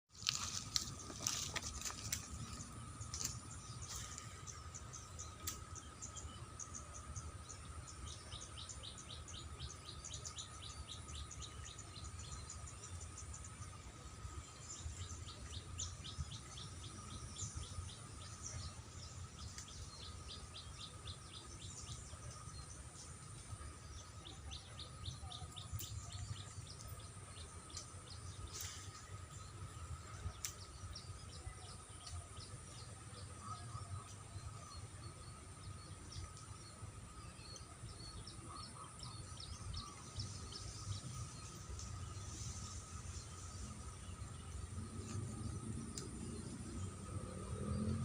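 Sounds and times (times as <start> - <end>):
insects droning: 0.1 - 48.0
bird chirping: 0.2 - 48.0
low rumble: 39.0 - 48.0.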